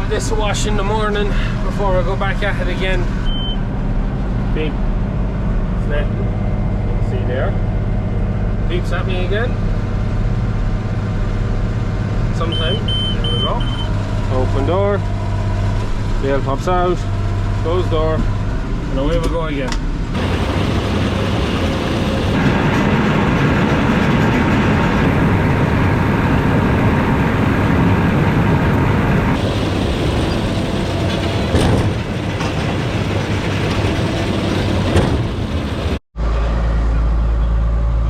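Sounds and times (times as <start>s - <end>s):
tractor engine hum: 0.0s - 38.0s
baler mechanical rattle: 19.0s - 36.0s.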